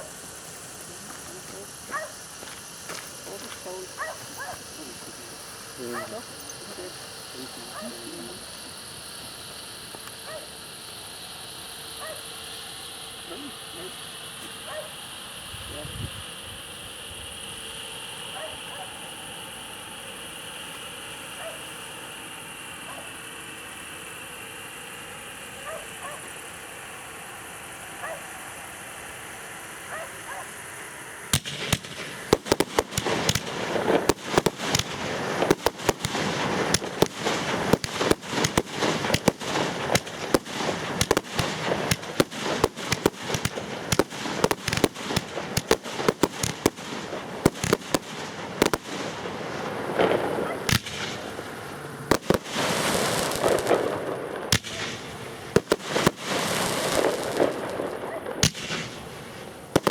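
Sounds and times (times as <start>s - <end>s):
fireworks bangs and cracks: 0.0s - 11.2s, 29.8s - 59.9s
hissing crackle: 0.0s - 59.9s.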